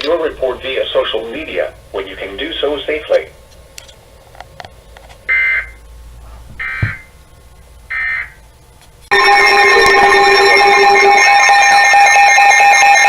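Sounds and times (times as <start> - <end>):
digital data code bursts: 9.1 - 13.0
steady electronic alert tone: 9.1 - 13.0.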